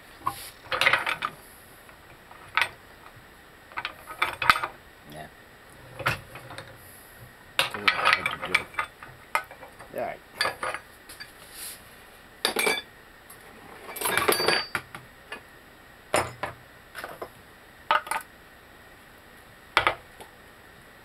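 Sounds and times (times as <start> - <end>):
metal parts clinking and knocking: 0.7 - 1.4, 3.8 - 4.7, 7.6 - 11.3, 13.8 - 14.8.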